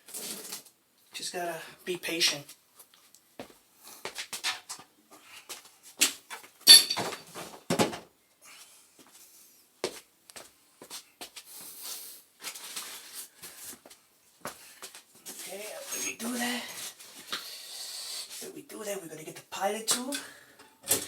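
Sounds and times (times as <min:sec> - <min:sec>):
ringing metallic clank: 0:06.7 - 0:07.2.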